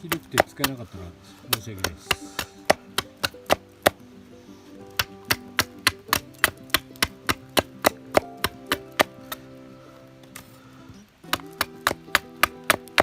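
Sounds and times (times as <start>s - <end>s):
axe chopping wooden branch: 0.0s - 4.0s, 4.9s - 9.4s, 11.2s - 13.0s
guitar music: 0.0s - 13.0s.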